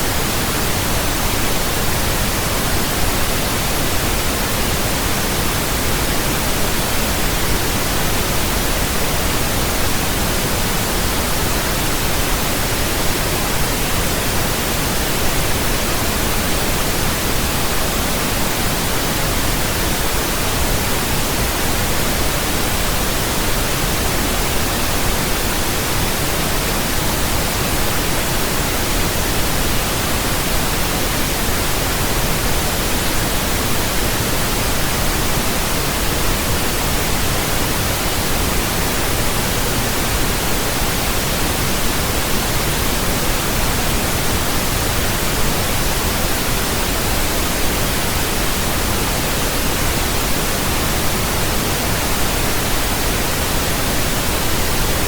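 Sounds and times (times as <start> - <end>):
pink noise hiss: 0.0 - 55.0.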